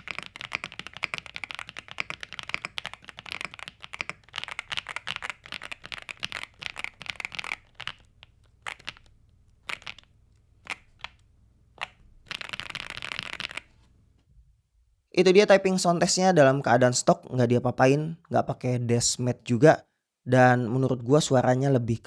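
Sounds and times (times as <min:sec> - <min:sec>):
mechanical keyboard typing: 0:00.0 - 0:11.2, 0:11.8 - 0:13.8.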